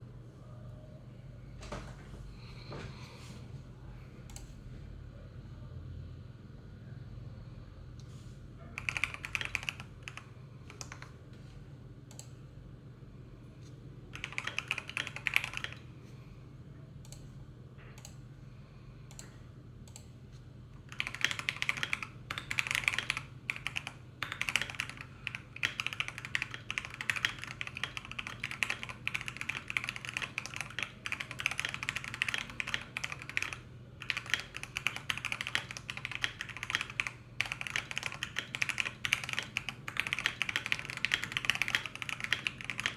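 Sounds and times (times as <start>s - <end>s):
mechanical keyboard typing: 8.8s - 11.2s, 14.1s - 15.8s, 20.8s - 42.9s.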